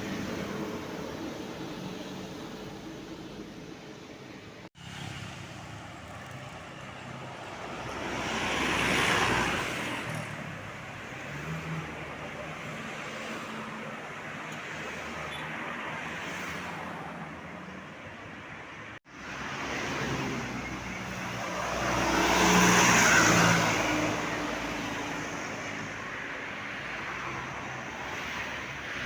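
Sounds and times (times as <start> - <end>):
road traffic noise: 0.0 - 29.0
vehicle passing close by: 7.5 - 12.5, 19.4 - 25.9.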